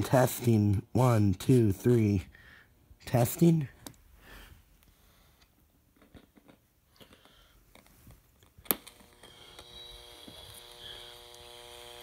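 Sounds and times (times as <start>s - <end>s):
speaker mains hum: 7.0s - 12.0s.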